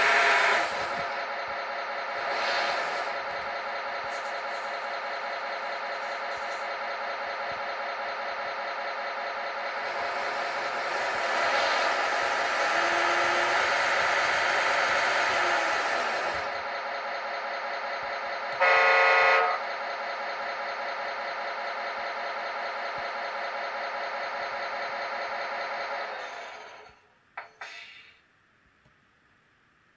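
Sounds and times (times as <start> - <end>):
horn sounding: 0.0 - 1.0, 18.5 - 19.7
machine drone: 0.0 - 27.0.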